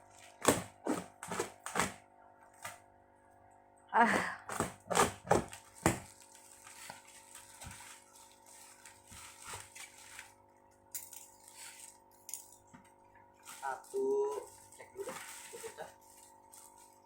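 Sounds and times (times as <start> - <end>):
packaging rustling: 5.4 - 12.0, 13.4 - 17.0.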